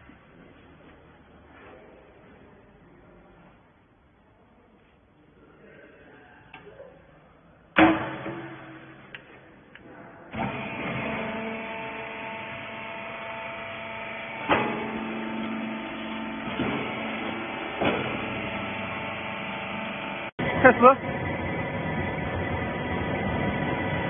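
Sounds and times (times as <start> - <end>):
loud metal clank: 7.8 - 9.2
baler motor and pump running: 10.3 - 24.0.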